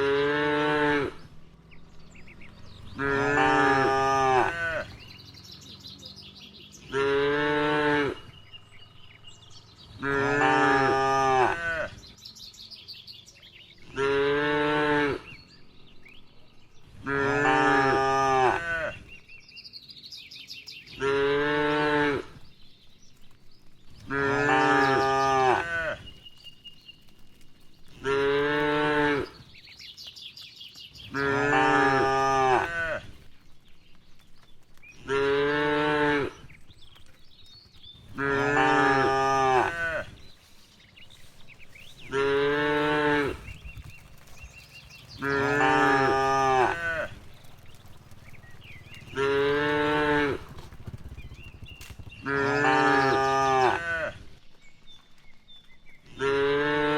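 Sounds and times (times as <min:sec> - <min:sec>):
cattle mooing: 0:00.0 - 0:01.2, 0:03.0 - 0:05.2, 0:06.9 - 0:08.3, 0:10.0 - 0:12.0, 0:17.0 - 0:19.0, 0:31.2 - 0:33.0, 0:38.2 - 0:40.1, 0:45.2 - 0:47.3, 0:48.9 - 0:50.5.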